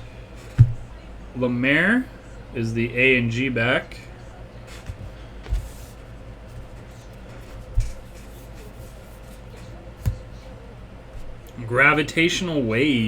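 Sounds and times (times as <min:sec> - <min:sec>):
low room hum: 0:00.0 - 0:13.0
soft knocks against table: 0:00.5 - 0:00.9, 0:07.6 - 0:08.2.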